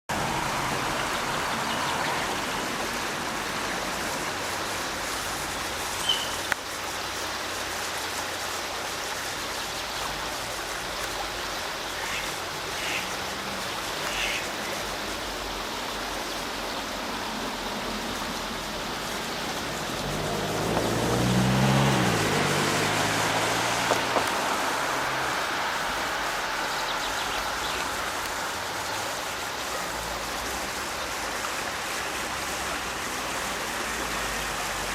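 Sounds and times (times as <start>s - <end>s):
steady rushing noise: 12.4s - 34.9s.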